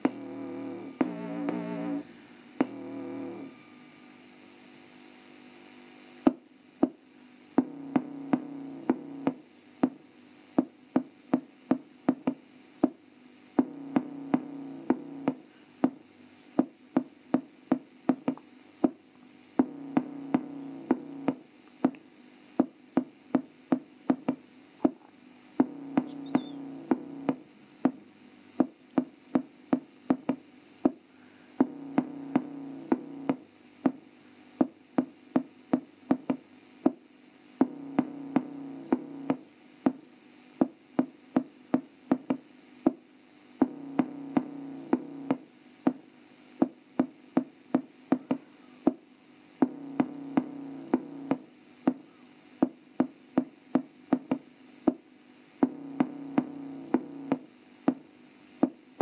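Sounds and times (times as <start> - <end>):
bass synth tone: 0.1 - 3.9
sharp knocking beat: 2.6 - 3.0.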